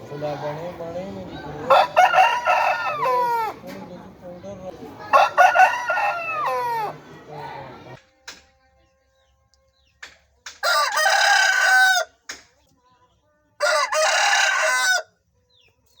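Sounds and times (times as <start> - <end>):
roosters crowing: 0.0 - 8.0, 10.6 - 12.2, 13.6 - 15.2.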